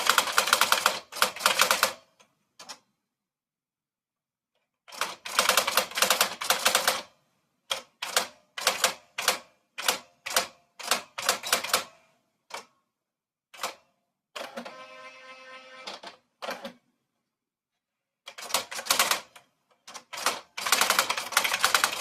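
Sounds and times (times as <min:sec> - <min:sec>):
typewriter keystrokes: 0:18.3 - 0:22.0.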